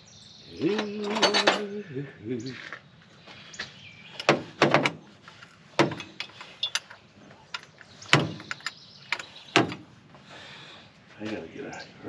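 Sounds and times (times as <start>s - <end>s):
metal tools clinking together: 0.6s - 1.8s, 5.2s - 9.4s.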